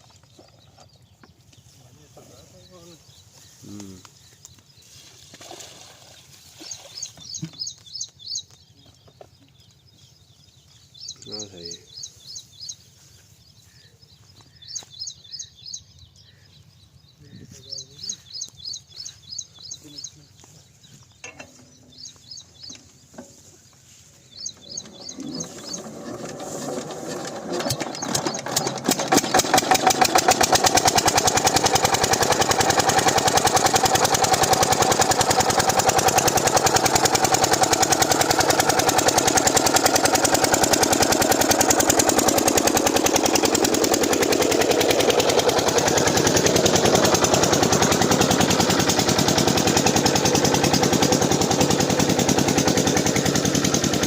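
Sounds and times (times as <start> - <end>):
birds chirping faintly: 0.0 - 54.0
diesel engine chugging: 24.3 - 54.0.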